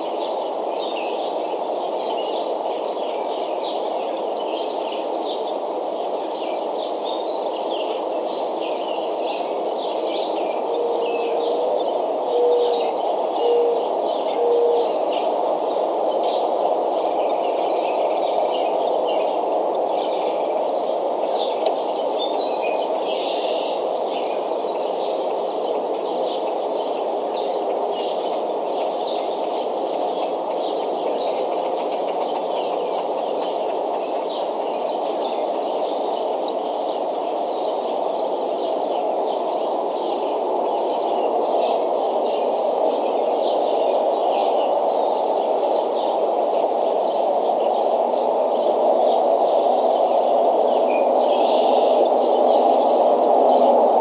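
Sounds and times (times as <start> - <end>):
steady rushing noise: 40.2 - 54.0.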